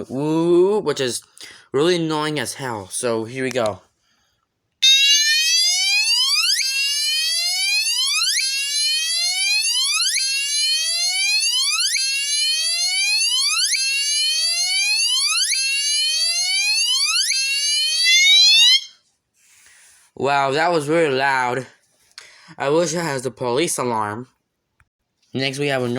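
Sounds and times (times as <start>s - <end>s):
fire alarm horn whoop tone: 4.8s - 19.0s.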